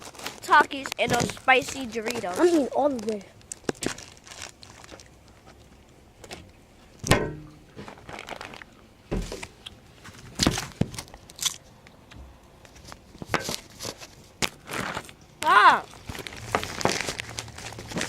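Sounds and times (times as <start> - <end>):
snack bags crinkling: 0.0 - 5.7, 7.8 - 8.8, 10.4 - 11.7, 12.7 - 18.0
crunchy snacks being chewed: 0.0 - 5.8, 11.0 - 12.2.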